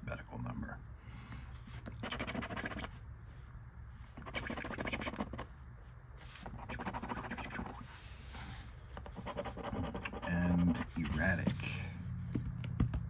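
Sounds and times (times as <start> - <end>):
scratch card being scratched: 1.9 - 3.0, 4.1 - 5.6, 6.4 - 7.9, 9.0 - 11.3.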